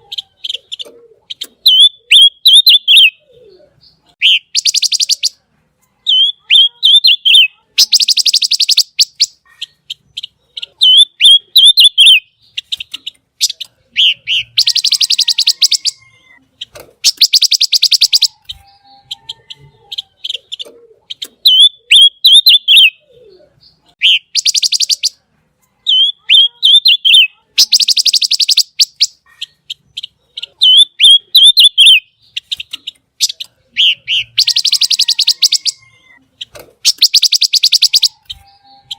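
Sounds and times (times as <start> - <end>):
songbird whistled warbles: 0.1 - 5.4, 6.0 - 16.4, 17.0 - 25.2, 25.8 - 36.2, 36.8 - 38.9
songbird rattling trill: 4.3 - 5.3, 6.9 - 10.3, 14.2 - 16.1, 17.0 - 18.5, 24.1 - 25.1, 26.7 - 35.8, 36.8 - 38.4.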